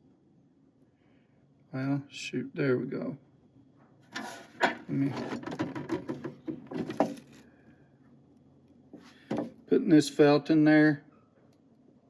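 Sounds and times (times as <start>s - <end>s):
metal toolbox parts rattling: 4.1s - 7.4s.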